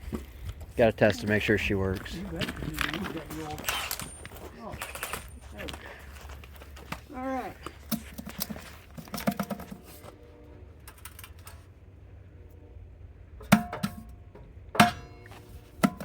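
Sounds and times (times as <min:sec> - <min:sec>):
metal tools rattling: 0:02.1 - 0:10.1
loud ringing metallic clanks: 0:13.4 - 0:16.0.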